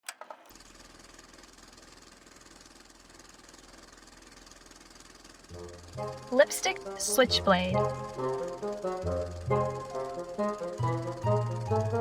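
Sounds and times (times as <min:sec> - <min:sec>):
short clicks: 0:00.0 - 0:00.4
motor hum with fast rattle: 0:00.0 - 0:12.0
music: 0:05.5 - 0:12.0.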